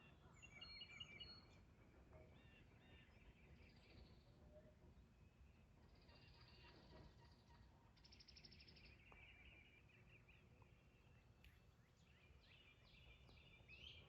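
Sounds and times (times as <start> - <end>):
songbirds singing: 6.0 - 14.0.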